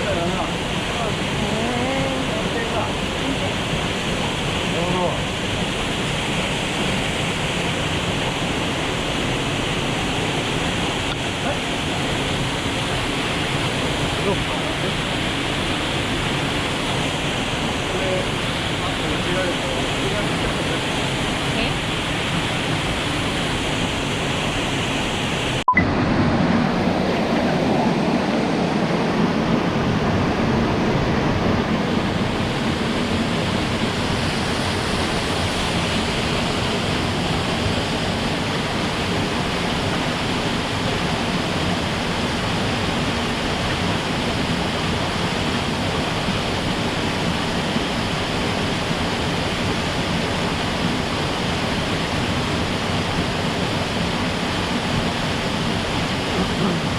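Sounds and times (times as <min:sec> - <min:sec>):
mountain stream rushing: 0:00.0 - 0:56.9.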